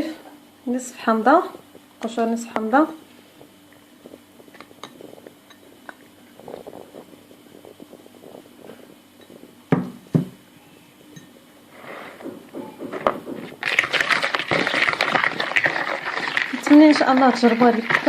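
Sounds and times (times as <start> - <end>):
stirring scraping in bowl: 13.5 - 18.0.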